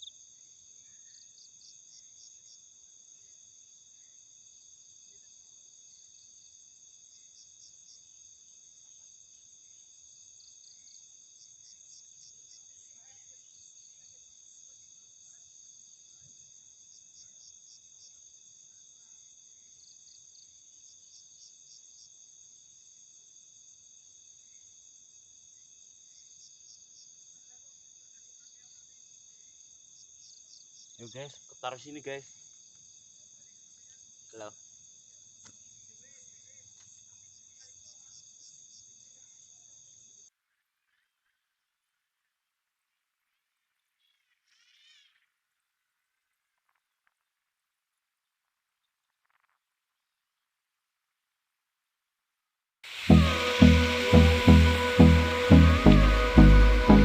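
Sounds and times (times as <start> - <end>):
insects trilling: 0.0 - 40.3.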